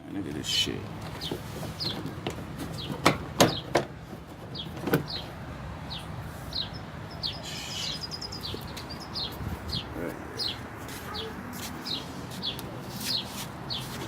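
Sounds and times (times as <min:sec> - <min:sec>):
small bird chirping: 0:04.6 - 0:13.9.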